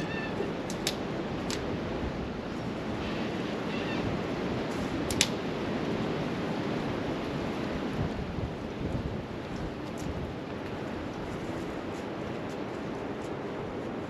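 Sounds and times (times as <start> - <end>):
strong wind rushing: 0.0 - 12.4
sharp clicks: 0.7 - 1.6, 5.1 - 5.4.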